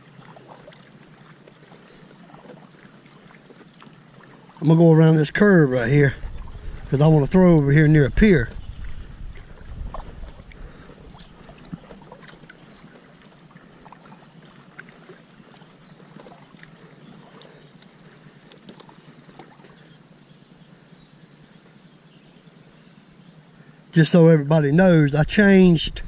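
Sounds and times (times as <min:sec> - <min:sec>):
paddle splashes and drips: 0:00.0 - 0:21.8.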